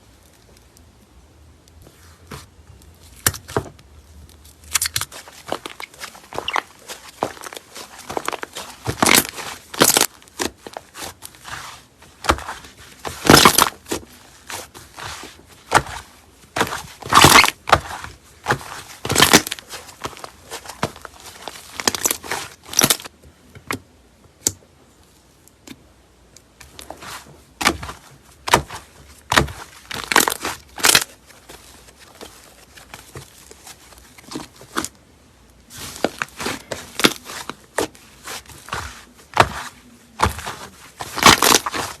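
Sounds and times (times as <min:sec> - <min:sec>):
slime crackling and popping: 0:04.6 - 0:14.0, 0:16.6 - 0:23.1, 0:27.6 - 0:31.1, 0:40.2 - 0:42.0.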